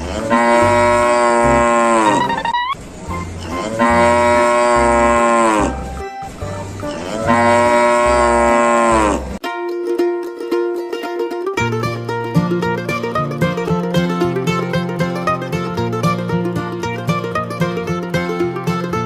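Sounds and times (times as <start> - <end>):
cow mooing: 0.0 - 2.5, 3.5 - 5.9, 6.9 - 9.4.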